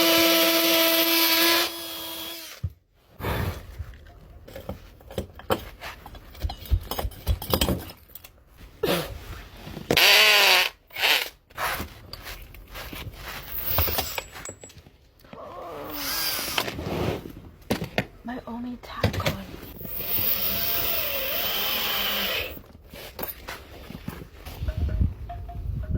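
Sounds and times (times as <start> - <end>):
power drill bursts: 19.8 - 22.6.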